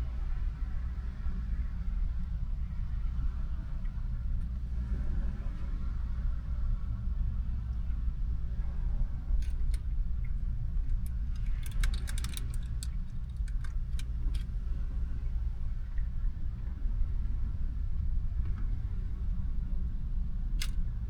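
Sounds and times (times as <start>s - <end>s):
low rumble inside a car: 0.0s - 21.0s
small sharp clicks and rattles: 9.4s - 14.6s, 20.6s - 20.8s.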